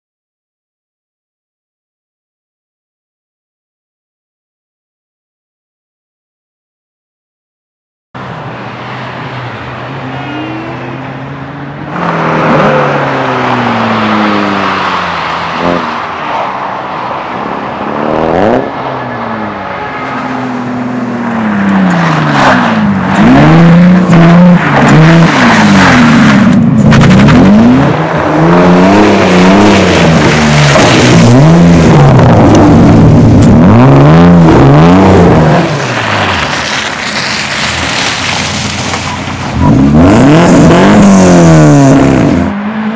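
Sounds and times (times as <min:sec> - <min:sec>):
race car engines revving: 0:08.2 - 0:42.9.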